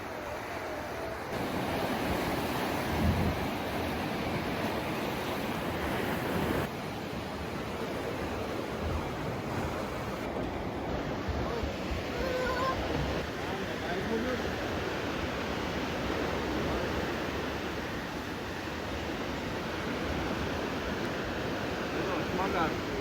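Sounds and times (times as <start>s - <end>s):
wind on microphone: 0.0s - 6.7s
surf washing onto shore: 0.0s - 23.0s.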